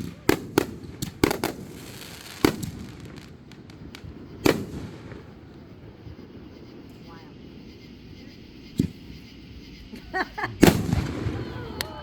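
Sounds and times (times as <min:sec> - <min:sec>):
fireworks bangs: 0:00.0 - 0:06.9, 0:10.6 - 0:12.0.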